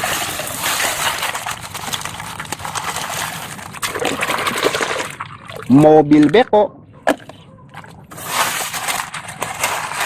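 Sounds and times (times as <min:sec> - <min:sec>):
plastic toys clattering: 0:08.2 - 0:10.0.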